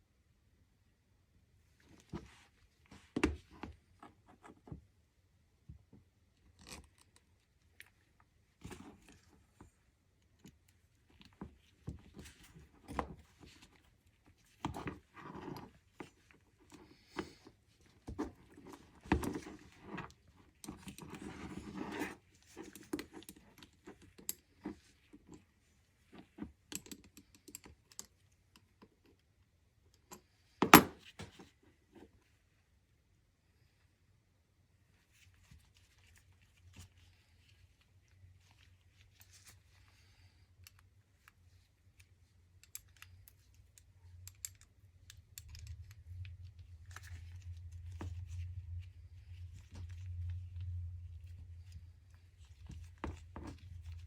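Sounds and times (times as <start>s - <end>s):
tools and bike parts clicking: 42.6s - 45.9s.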